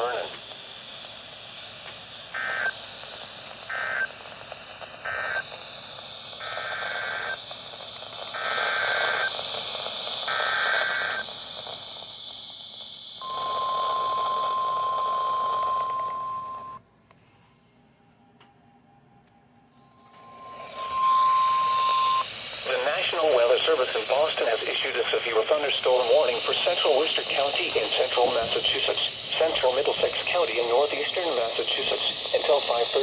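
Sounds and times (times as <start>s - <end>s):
steady warning alarm tone: 0.0s - 17.0s, 17.6s - 33.0s
receiver hiss: 0.0s - 33.0s
data bursts: 2.3s - 16.8s, 19.8s - 33.0s.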